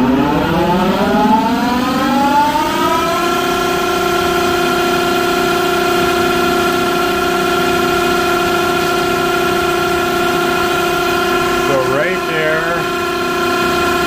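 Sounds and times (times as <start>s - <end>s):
lathe spindle whining: 0.0s - 14.0s.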